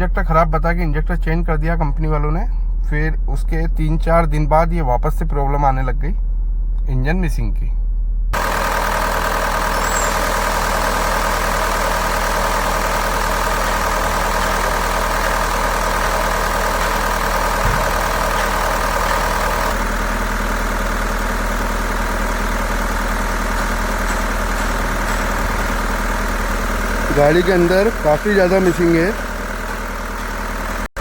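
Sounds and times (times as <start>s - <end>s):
diesel engine idling unevenly: 8.1s - 31.0s.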